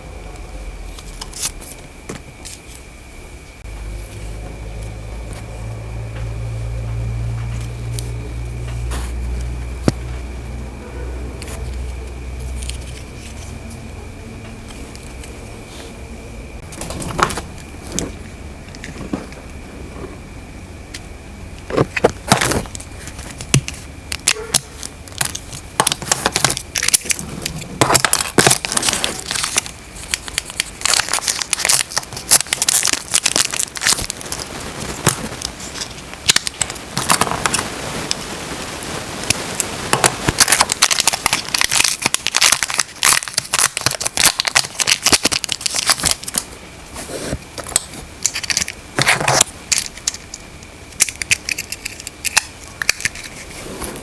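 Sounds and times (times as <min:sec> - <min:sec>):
plastic wrap and paper crinkling: 0:16.6 - 0:20.0, 0:21.7 - 0:50.4.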